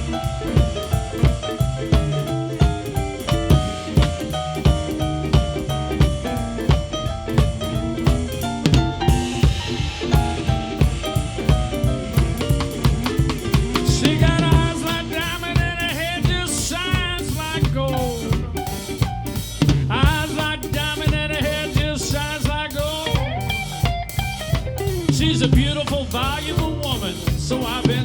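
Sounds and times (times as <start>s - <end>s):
lead instrument bending notes: 0.0s - 16.1s
drum kit beat: 0.0s - 28.0s.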